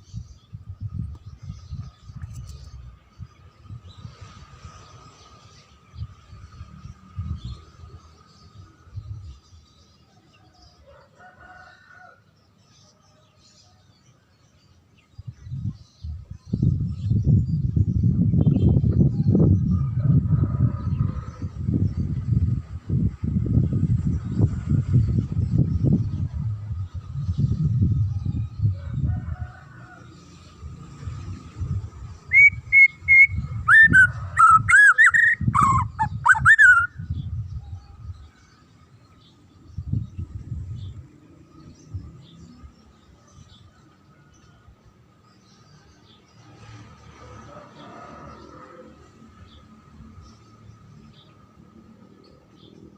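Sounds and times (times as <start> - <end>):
distant rooster crowing: 10.3 - 12.4, 19.1 - 21.7, 28.2 - 30.7, 32.3 - 37.0, 47.2 - 49.7
low rumbling noise: 15.5 - 38.2
songbird whistling: 32.3 - 37.0
high bird chirps: 32.3 - 37.2.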